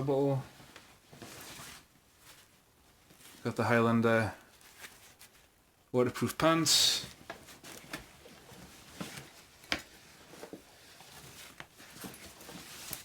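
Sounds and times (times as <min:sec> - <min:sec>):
fabric rustling: 0:00.0 - 0:05.8, 0:07.0 - 0:13.0.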